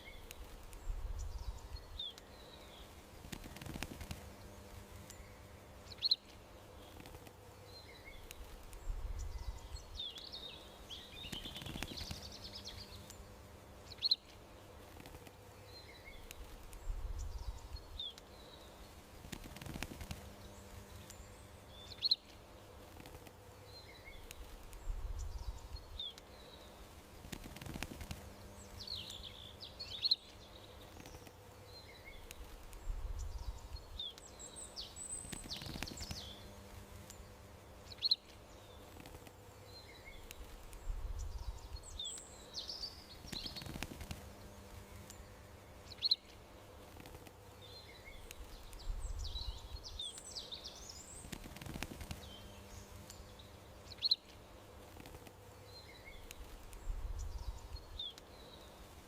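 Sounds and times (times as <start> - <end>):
faint steady hum: 0.0 - 59.0
songbirds chirping: 0.0 - 59.0.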